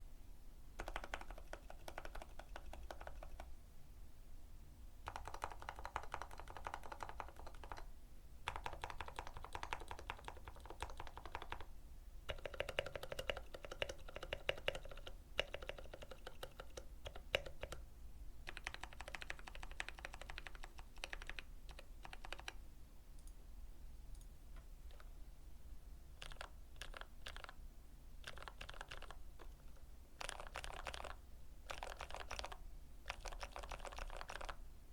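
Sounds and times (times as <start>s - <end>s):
mechanical keyboard typing: 0.8s - 3.5s, 5.0s - 7.9s, 8.5s - 11.7s, 12.3s - 17.8s, 18.5s - 22.6s, 24.9s - 25.1s, 26.2s - 27.6s, 28.2s - 34.6s.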